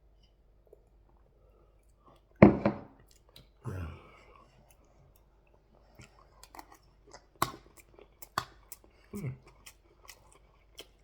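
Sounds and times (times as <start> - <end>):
man chewing and eating: 3.0 - 11.0.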